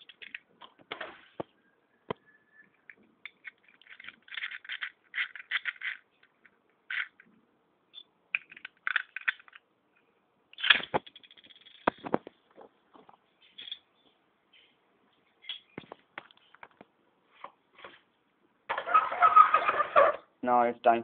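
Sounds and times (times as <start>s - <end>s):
spinning-top parts clicking and rattling: 3.2s - 7.2s, 8.3s - 9.6s, 10.6s - 12.0s.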